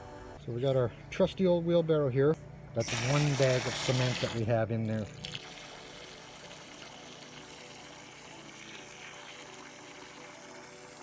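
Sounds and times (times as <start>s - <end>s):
water running from a hose: 2.8s - 11.0s.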